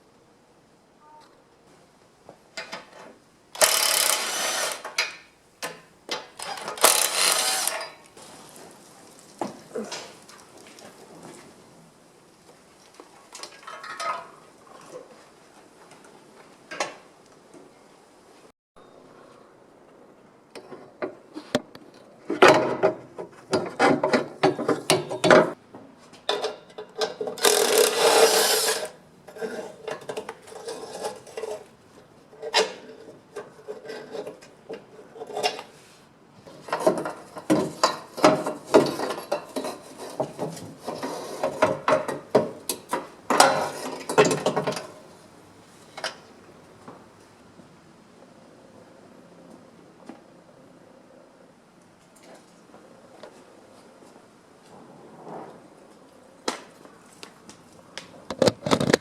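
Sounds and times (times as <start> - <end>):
hand tool scraping and rasping: 3.6 - 5.0, 6.4 - 8.0, 27.4 - 31.7, 32.4 - 41.8.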